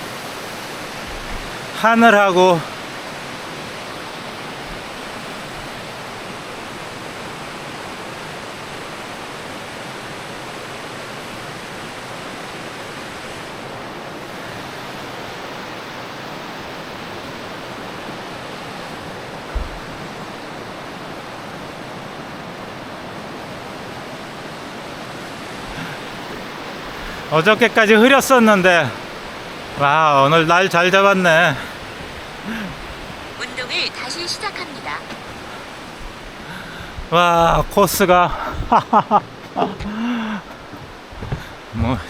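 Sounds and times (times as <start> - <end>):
mountain stream rushing: 0.0 - 42.0
low thump: 19.5 - 20.0.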